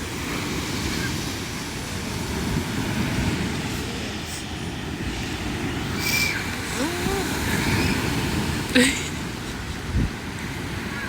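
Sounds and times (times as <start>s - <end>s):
wind and surf rumble: 0.0s - 11.0s.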